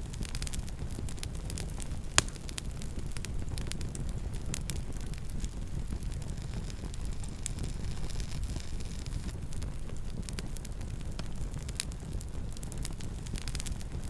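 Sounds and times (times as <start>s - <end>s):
loud fire pop: 0.0s - 9.5s
campfire crackling: 0.0s - 14.0s.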